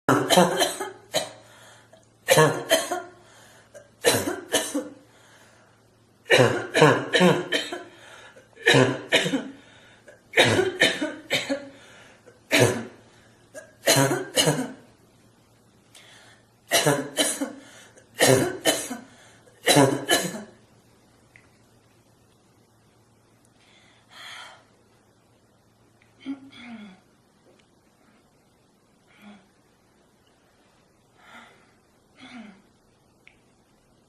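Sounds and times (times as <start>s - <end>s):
person coughing: 0.1s - 1.4s, 2.3s - 3.2s, 3.8s - 5.0s, 6.3s - 11.8s, 12.4s - 13.0s, 13.6s - 14.8s, 16.7s - 20.6s.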